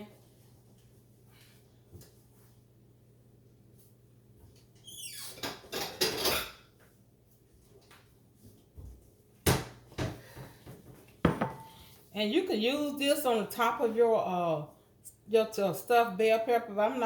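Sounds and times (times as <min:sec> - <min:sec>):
dish knocking on counter: 0:11.2 - 0:11.8.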